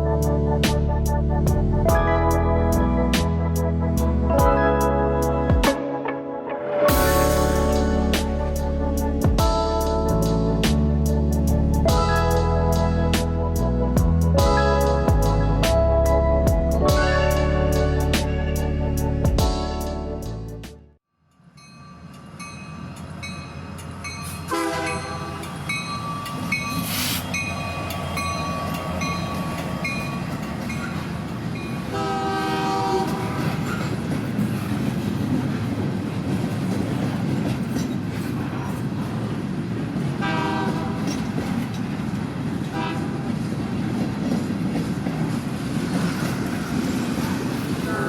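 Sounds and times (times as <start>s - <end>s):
locomotive bell ringing: 6.9s - 10.4s, 21.4s - 32.1s
steam train running on track: 6.9s - 15.6s, 21.6s - 48.0s
steam whistle blasts: 24.5s - 25.5s, 31.9s - 33.2s, 40.2s - 41.0s.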